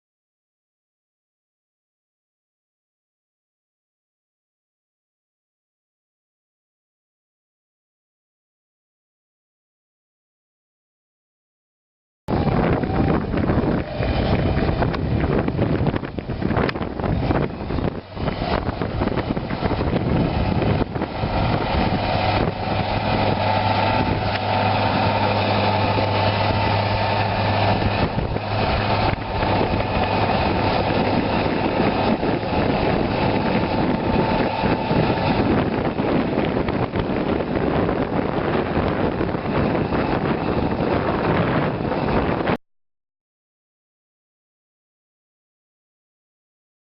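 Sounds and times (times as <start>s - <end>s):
heavy vehicle engine running: 12.3s - 42.6s.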